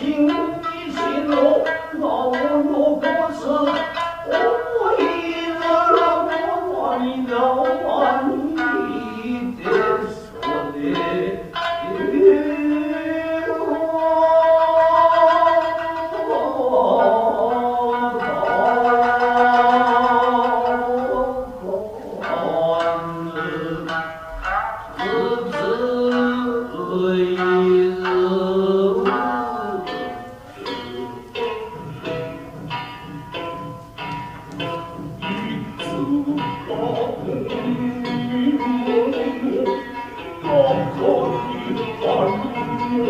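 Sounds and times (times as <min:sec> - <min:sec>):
plucked shamisen notes: 0:00.0 - 0:43.0
drum strikes: 0:29.9 - 0:43.0.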